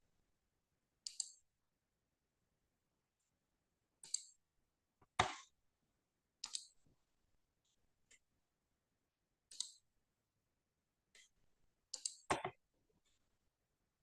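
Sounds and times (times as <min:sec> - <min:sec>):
computer mouse clicking: 0:01.0 - 0:01.4, 0:04.0 - 0:04.4, 0:06.4 - 0:06.8, 0:09.5 - 0:09.8, 0:11.9 - 0:12.5.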